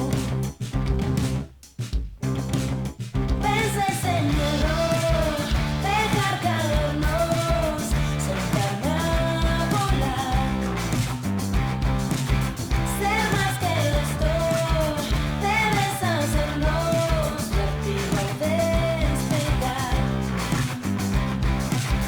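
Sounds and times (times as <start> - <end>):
rock band playing: 2.7 - 22.0
woman singing: 3.4 - 10.7, 12.9 - 20.3.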